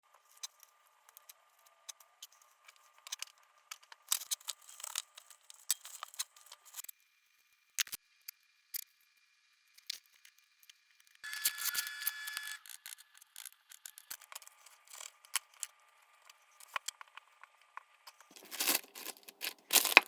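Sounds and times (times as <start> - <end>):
crinkly rustles: 18.1 - 20.0.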